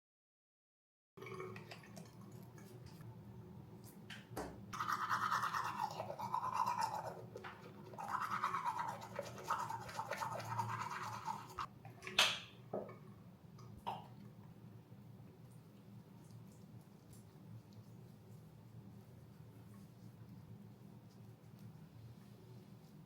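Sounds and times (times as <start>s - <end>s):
rhythmic brushing or scrubbing: 4.8s - 11.7s.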